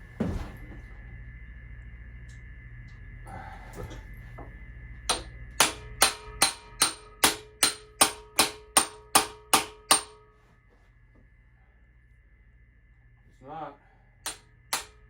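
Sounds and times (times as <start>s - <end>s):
hammer striking impact driver: 5.1s - 10.2s, 14.3s - 15.0s.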